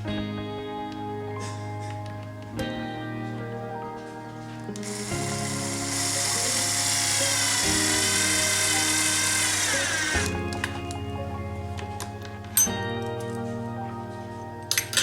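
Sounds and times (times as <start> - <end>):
background music: 0.0 - 15.0
power drill whining: 4.7 - 11.0.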